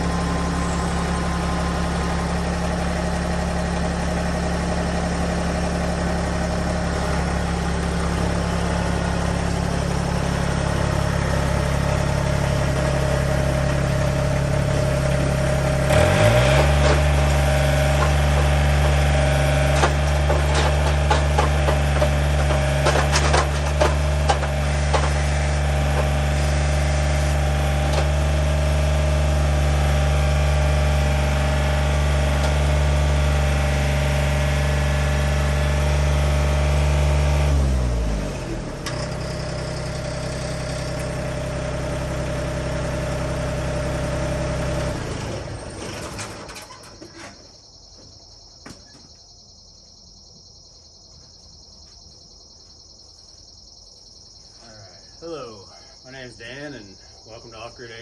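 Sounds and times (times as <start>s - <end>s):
engine idling: 0.0s - 47.4s
sharp clicks and knocks: 16.4s - 26.2s.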